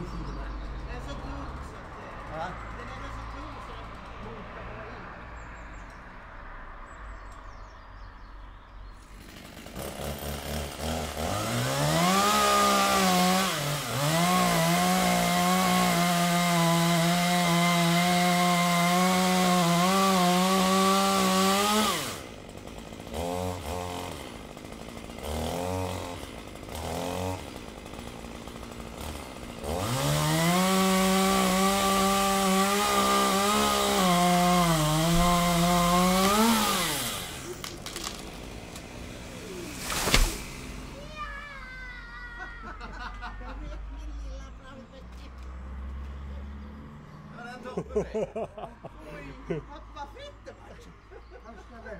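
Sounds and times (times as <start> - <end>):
chainsaw revving while cutting: 9.0 - 41.3, 45.7 - 49.7.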